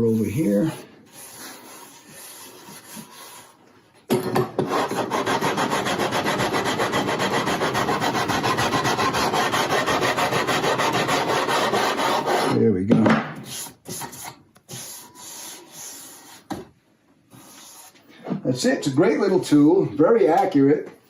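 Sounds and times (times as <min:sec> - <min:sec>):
sanding block on wood: 0:00.0 - 0:03.6, 0:04.6 - 0:12.6.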